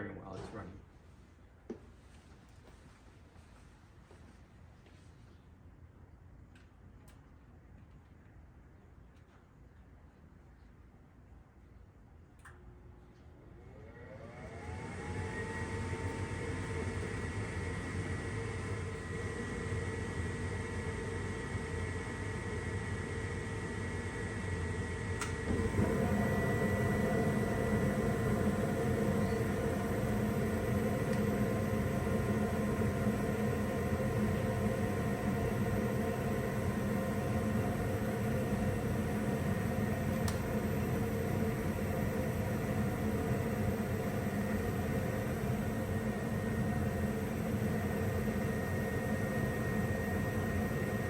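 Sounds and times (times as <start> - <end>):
motor hum: 13.2 - 51.0
faint high whine: 17.8 - 51.0
blower air rush: 25.2 - 51.0.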